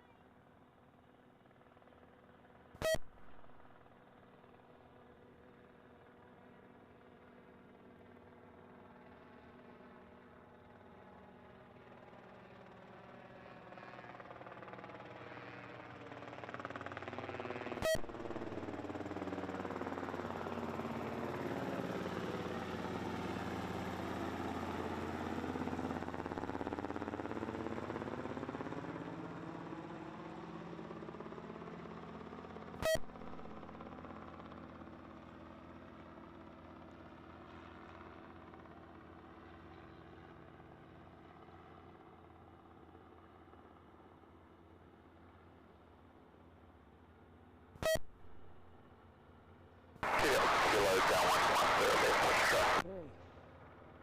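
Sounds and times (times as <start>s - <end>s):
aircraft engine flying past: 50.0s - 54.0s.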